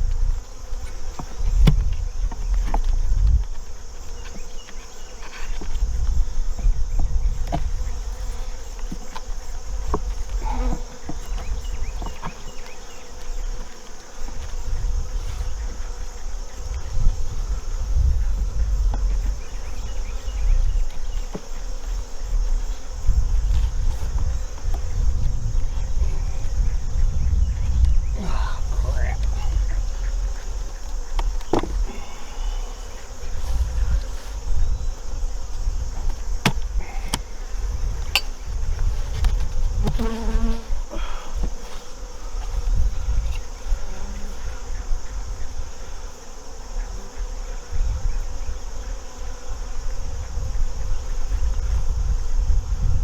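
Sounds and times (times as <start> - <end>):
knocks and clicks from hive handling: 0.0 - 14.7, 20.8 - 25.3, 29.0 - 32.3, 35.9 - 40.6
honeybees buzzing: 0.0 - 53.0.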